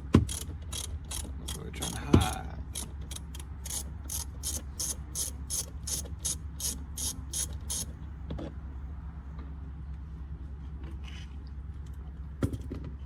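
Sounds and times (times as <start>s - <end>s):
hand ratchet clicking: 0.2s - 7.9s.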